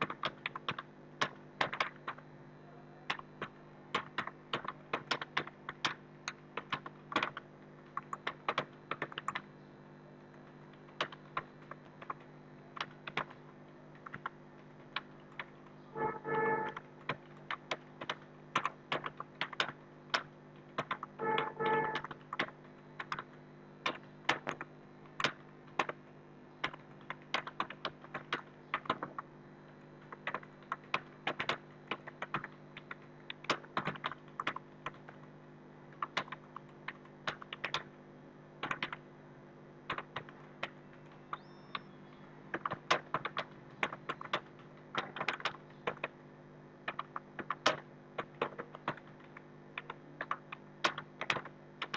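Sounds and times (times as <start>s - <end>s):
low hum: 13.8s - 17.0s
keyboard typing: 14.0s - 23.2s.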